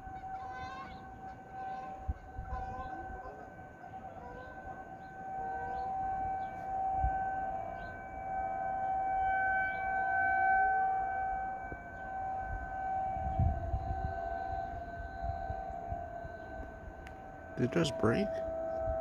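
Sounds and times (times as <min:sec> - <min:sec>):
rotating warning siren: 0:00.0 - 0:19.0.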